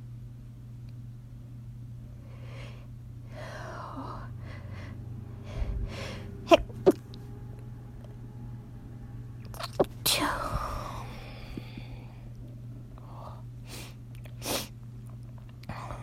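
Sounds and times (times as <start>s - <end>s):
stifled sneezes: 6.5s - 7.1s.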